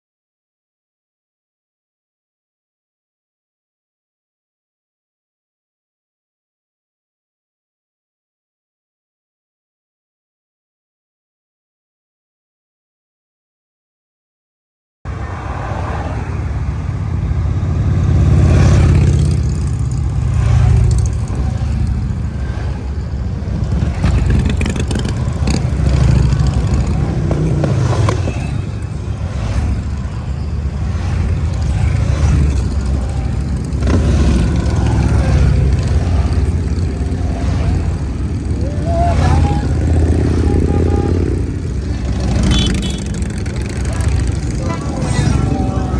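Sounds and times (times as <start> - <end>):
motorcycles passing: 15.1 - 45.9.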